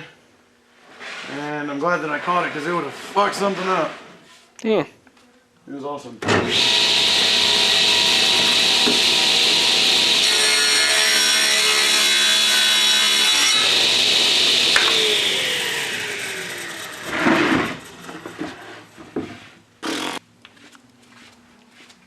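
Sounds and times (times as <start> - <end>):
power tool cutting wood: 6.4 - 18.8.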